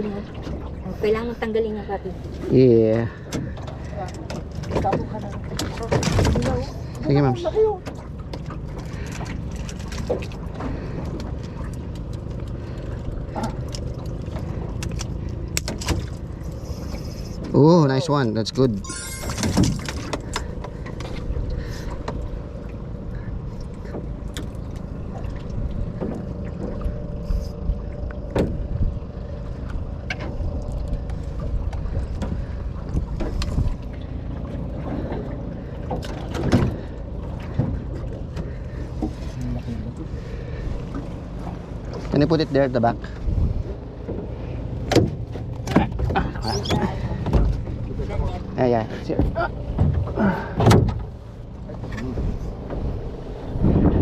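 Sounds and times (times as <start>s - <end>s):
boat engine humming: 0.0s - 54.0s
knocks and clatter on board: 3.3s - 6.7s, 19.4s - 21.2s, 35.9s - 36.9s, 44.9s - 47.8s, 49.2s - 51.1s.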